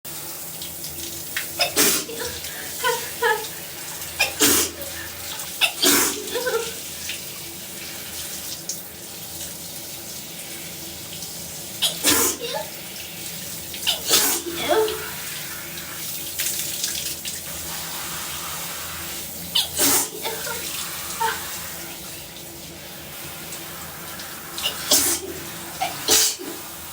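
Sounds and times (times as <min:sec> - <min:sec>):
shower water running: 0:00.1 - 0:26.9
woman sneezing: 0:01.6 - 0:03.4, 0:04.2 - 0:05.0, 0:05.6 - 0:06.7, 0:11.8 - 0:12.7, 0:13.9 - 0:15.1, 0:19.6 - 0:20.6, 0:24.6 - 0:26.6
woman's voice: 0:12.1 - 0:12.7, 0:14.0 - 0:15.2, 0:19.9 - 0:21.5.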